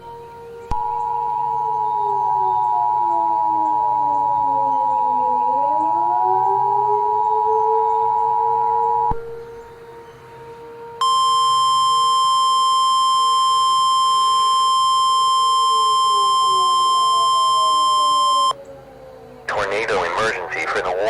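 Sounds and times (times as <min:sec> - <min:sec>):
steady warning alarm tone: 0:00.0 - 0:21.0
faint gliding background tones: 0:00.1 - 0:21.0
two-tone attention signal: 0:00.7 - 0:09.2, 0:11.0 - 0:18.6.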